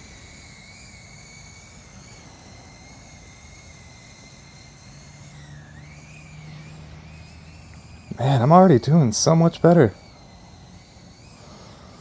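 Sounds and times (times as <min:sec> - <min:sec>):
drone motors whining: 0:00.0 - 0:12.0.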